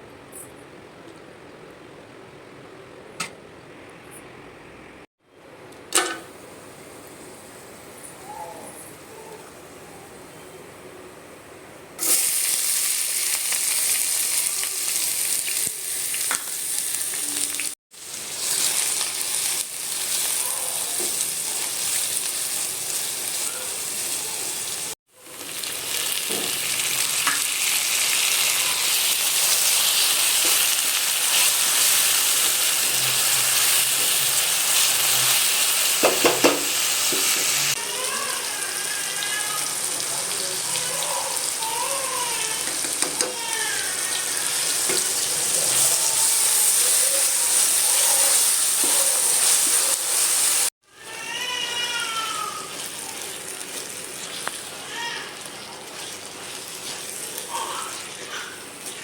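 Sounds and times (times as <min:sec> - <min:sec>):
food sizzling in hot oil: 0:12.0 - 0:59.0
stirring in a pan: 0:52.3 - 0:59.0.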